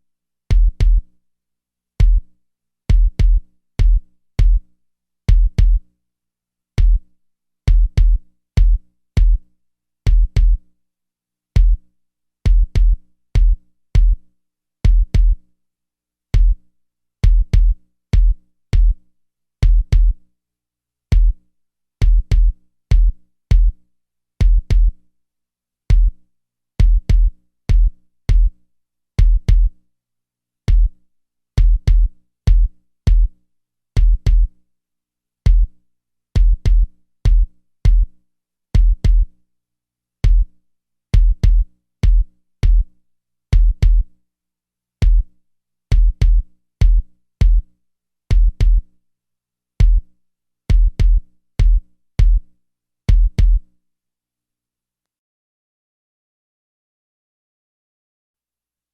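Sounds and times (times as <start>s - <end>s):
deep bass kick drum hits: 38.8s - 39.2s, 45.9s - 47.6s, 50.7s - 52.4s, 53.1s - 53.6s.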